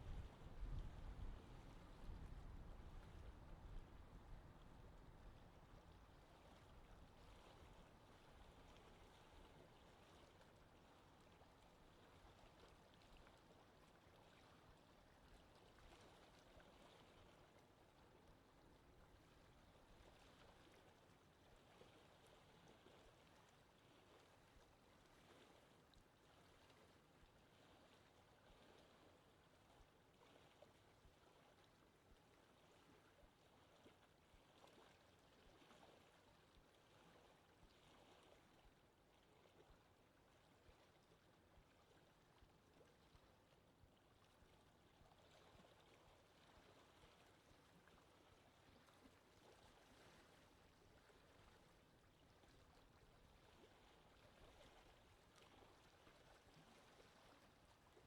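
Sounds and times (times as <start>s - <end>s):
small waves lapping: 0.0s - 58.0s
wind over open water: 0.0s - 58.0s.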